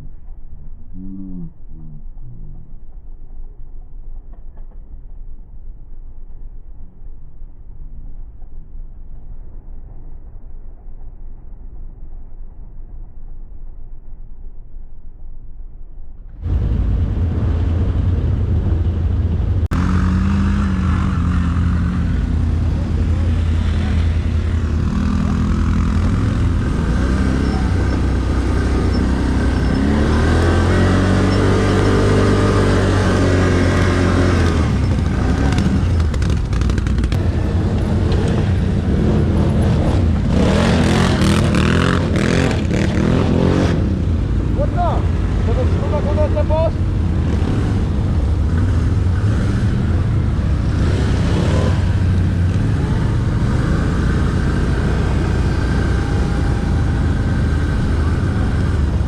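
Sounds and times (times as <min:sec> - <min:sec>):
atv engine revving: 0:16.4 - 0:59.0.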